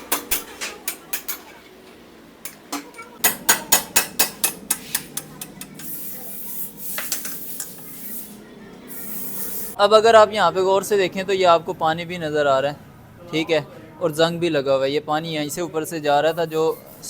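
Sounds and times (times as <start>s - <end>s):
hammer striking steel punch: 0.0s - 1.4s, 2.4s - 6.0s
steady hiss: 4.8s - 9.8s.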